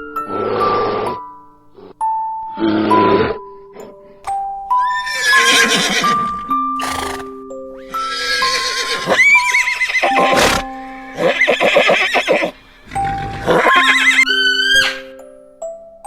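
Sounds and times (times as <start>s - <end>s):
background music of held notes: 0.0s - 16.0s
horse whinnying: 4.8s - 15.1s.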